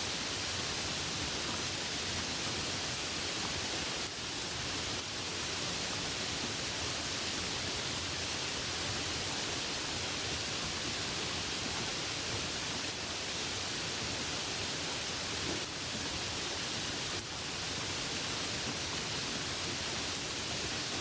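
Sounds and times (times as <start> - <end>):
steady rain hiss: 0.0 - 21.0.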